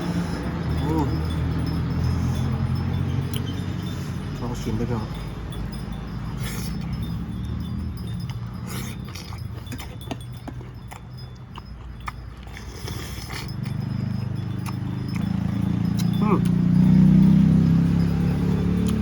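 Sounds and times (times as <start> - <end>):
person chewing with mouth clicks: 8.3 - 16.8.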